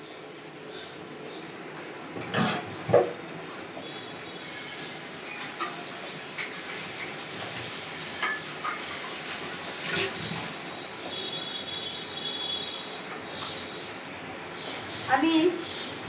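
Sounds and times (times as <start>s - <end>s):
food sizzling in a pan: 4.3s - 10.2s.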